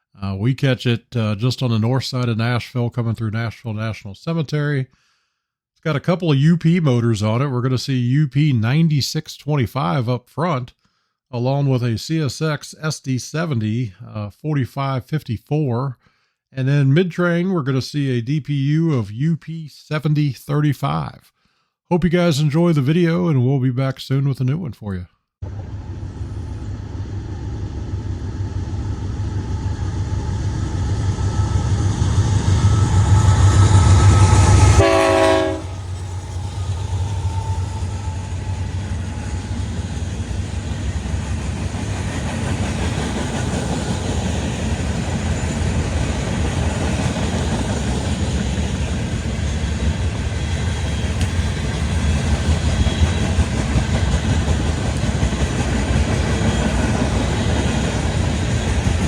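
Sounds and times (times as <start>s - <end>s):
locomotive engine drone: 25.4s - 59.0s
train horn note: 32.6s - 38.8s.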